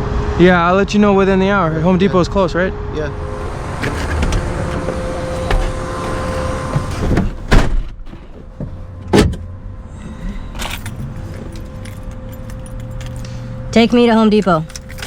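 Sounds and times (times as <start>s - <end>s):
car engine rumbling: 0.0s - 15.0s
sharp loud thumps: 3.2s - 9.4s.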